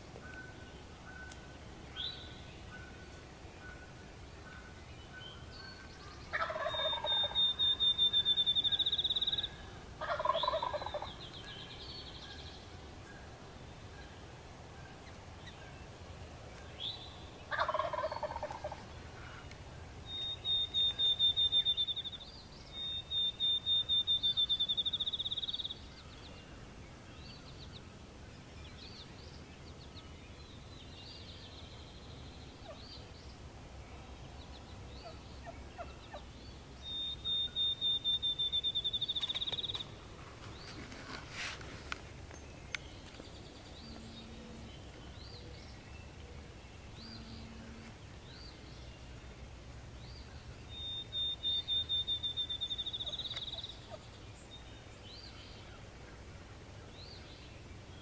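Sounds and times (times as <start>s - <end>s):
songbird trilling: 5.2s - 9.6s, 20.0s - 25.8s, 35.0s - 40.0s, 50.7s - 54.0s
turkey gobbling: 6.3s - 8.2s, 10.0s - 11.1s, 17.5s - 18.8s.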